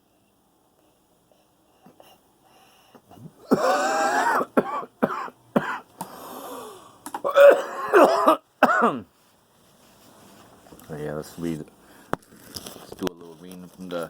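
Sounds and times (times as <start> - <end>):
drawn breath: 0.8 - 3.2, 6.0 - 7.0
man coughing hard: 3.1 - 5.9, 7.2 - 9.1.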